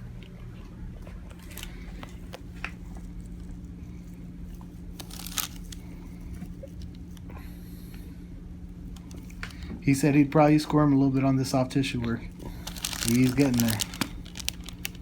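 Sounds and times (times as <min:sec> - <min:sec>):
steady low hum: 0:00.0 - 0:15.0
small crackles: 0:01.3 - 0:07.3, 0:12.4 - 0:15.0.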